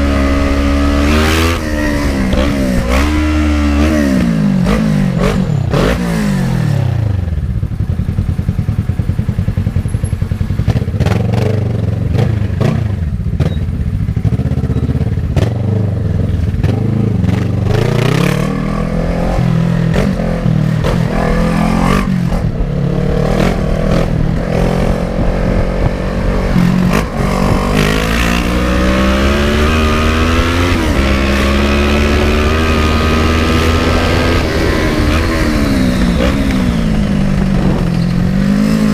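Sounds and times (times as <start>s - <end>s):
motorcycle engine revving: 0.0s - 38.9s.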